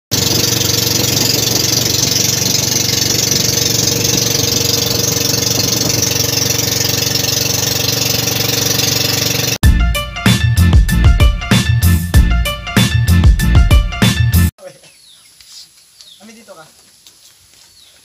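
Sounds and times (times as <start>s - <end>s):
engine idling: 0.1s - 9.6s.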